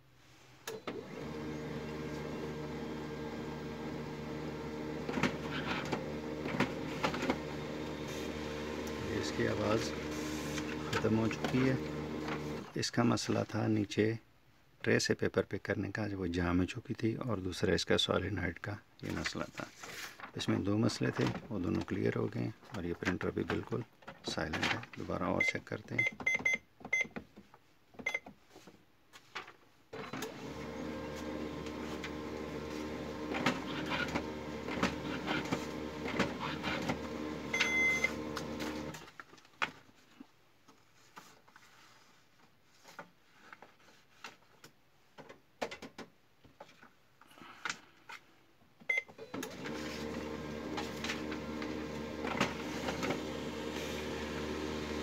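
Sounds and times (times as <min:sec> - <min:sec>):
printer motor humming: 0:00.9 - 0:12.7, 0:30.0 - 0:39.0, 0:49.3 - 0:55.0.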